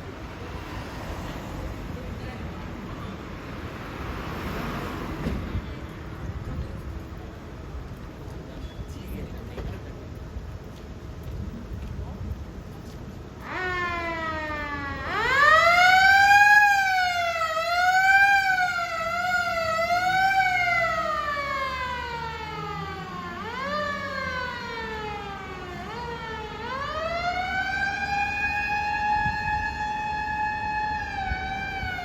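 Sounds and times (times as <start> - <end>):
motor siren wailing: 13.4 - 32.0.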